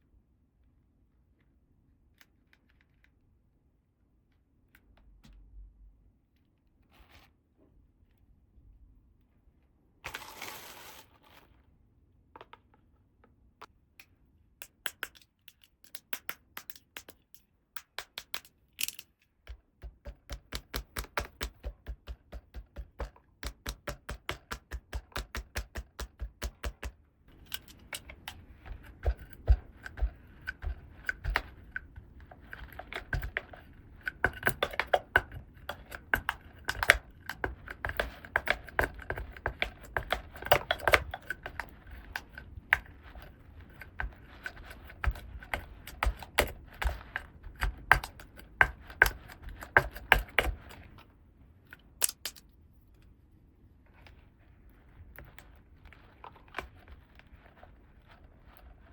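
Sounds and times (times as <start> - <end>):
plastic toy pieces clicking: 14.0 - 19.3, 52.0 - 52.5
rustling: 53.7 - 58.9.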